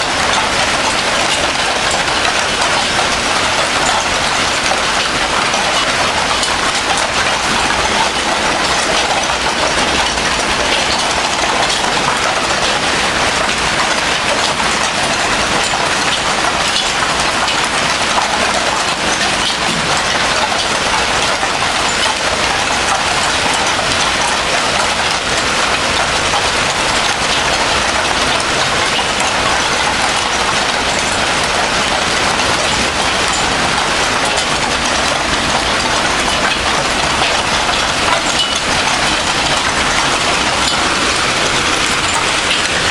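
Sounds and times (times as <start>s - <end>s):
hail and rain drumming: 0.0s - 42.9s.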